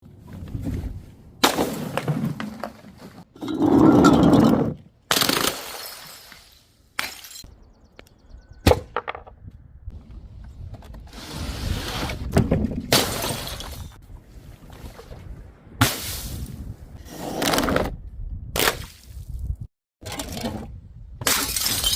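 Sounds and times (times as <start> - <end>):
glass bottles smashing: 5.4 - 7.5, 12.9 - 14.0, 21.2 - 21.9
glass fragments scattering: 5.5 - 7.5, 21.3 - 21.9.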